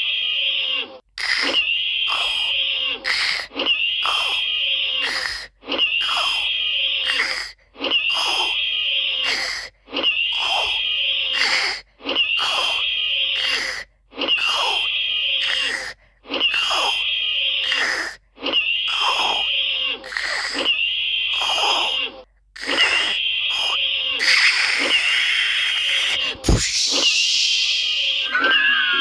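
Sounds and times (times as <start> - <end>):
high held tone: 26.4 - 29.0.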